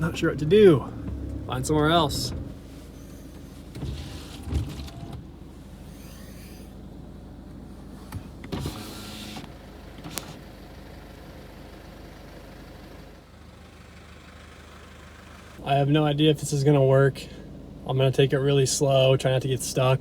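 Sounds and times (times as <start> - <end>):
van engine idling: 0.0 - 20.0
rustling: 2.4 - 6.7.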